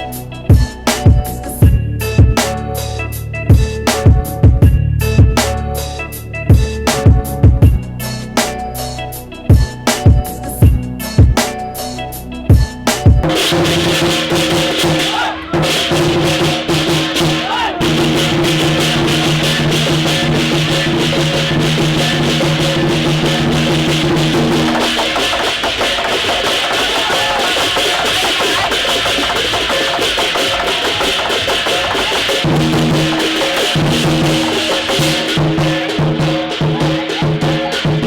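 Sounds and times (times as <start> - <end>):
held low chords: 0.0 - 11.4, 12.2 - 25.9
drums: 0.0 - 38.0
shaker-like percussion: 13.4 - 38.0.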